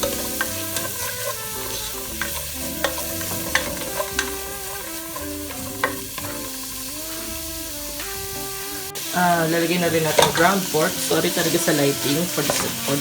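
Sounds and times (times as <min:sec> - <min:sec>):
utensil clicking against pan: 0:00.0 - 0:07.0, 0:10.1 - 0:13.0
garlic and onion sizzling in oil: 0:00.0 - 0:13.0.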